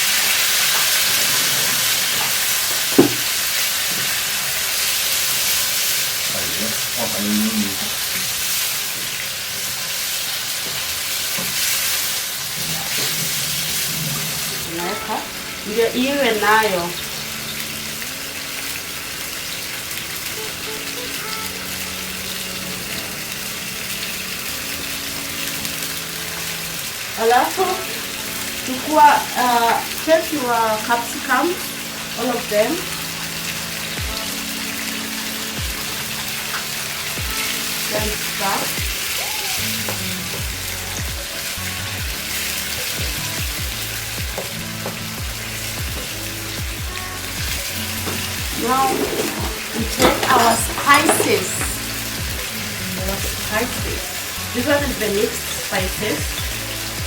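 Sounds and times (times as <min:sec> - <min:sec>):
sauce sizzling in a pot: 0:00.0 - 0:57.0
background music with bass beat: 0:35.6 - 0:50.9, 0:55.8 - 0:57.0.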